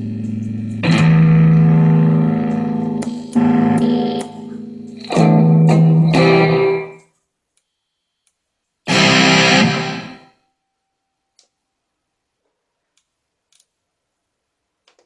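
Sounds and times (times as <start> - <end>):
amplified guitar chords strummed: 0.0 - 7.0, 8.9 - 10.4.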